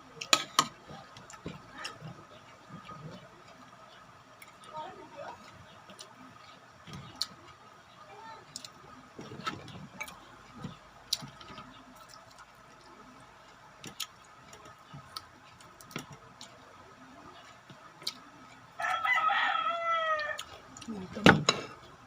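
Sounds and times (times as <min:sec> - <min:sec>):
person chewing: 0:08.5 - 0:16.6, 0:17.4 - 0:19.0, 0:20.3 - 0:21.0.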